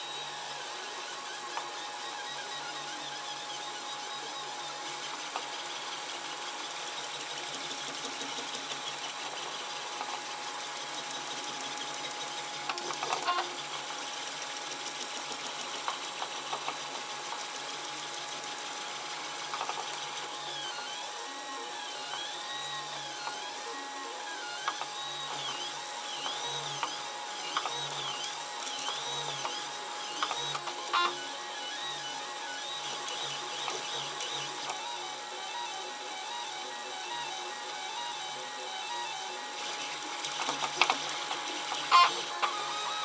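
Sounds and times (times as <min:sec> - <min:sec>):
printer stepper motors whirring: 0:00.0 - 0:43.0.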